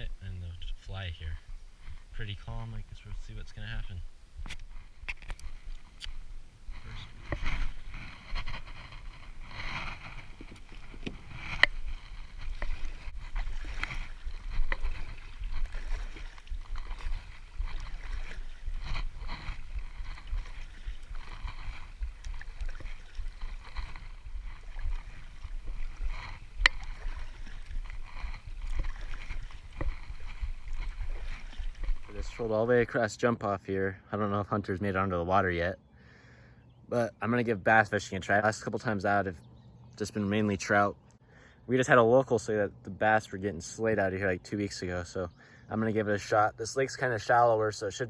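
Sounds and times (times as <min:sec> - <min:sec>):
paddle splashing in water: 0:04.4 - 0:32.6.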